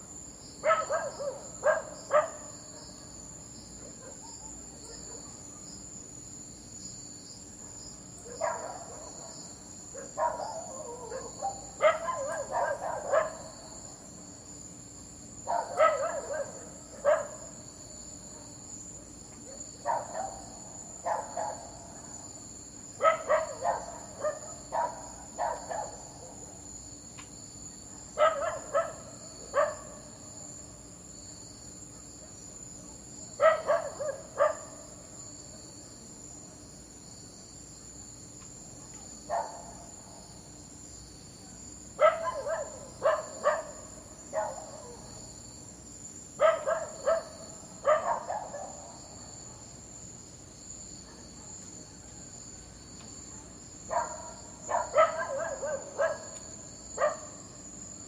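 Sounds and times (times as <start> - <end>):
crickets chirping: 0.0 - 58.0
dog barking: 0.6 - 2.6, 3.8 - 5.4, 8.2 - 13.6, 15.4 - 17.5, 19.4 - 22.1, 23.0 - 26.5, 28.2 - 30.1, 33.4 - 34.9, 38.9 - 39.9, 42.0 - 45.2, 46.4 - 49.7, 51.0 - 51.6, 53.3 - 57.4.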